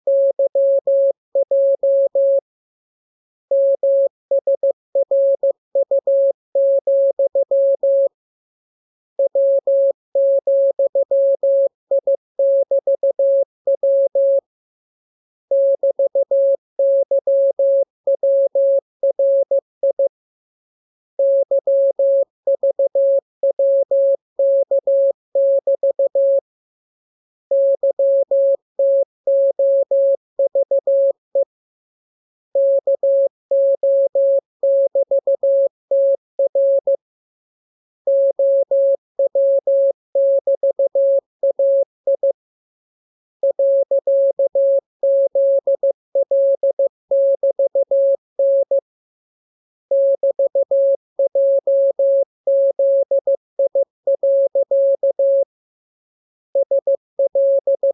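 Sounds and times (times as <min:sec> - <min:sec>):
morse code tone: 0:00.1 - 0:02.4, 0:09.2 - 0:14.4, 0:21.2 - 0:26.4, 0:27.6 - 0:31.2, 0:32.6 - 0:37.0, 0:38.1 - 0:42.3, 0:43.4 - 0:48.8, 0:50.0 - 0:55.5, 0:56.6 - 0:57.9.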